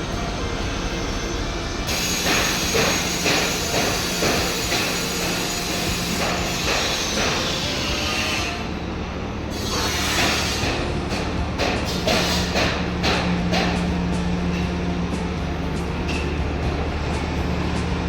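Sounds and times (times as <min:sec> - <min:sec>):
train rumbling on rails: 0:00.0 - 0:18.0
train wheels clacking: 0:01.2 - 0:08.6, 0:09.6 - 0:18.0.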